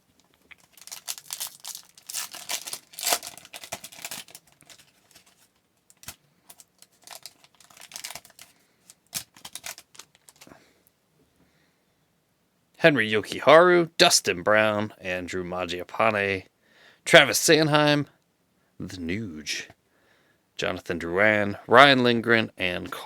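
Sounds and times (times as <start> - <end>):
foil wrapper tearing and crinkling: 0.0 - 10.5.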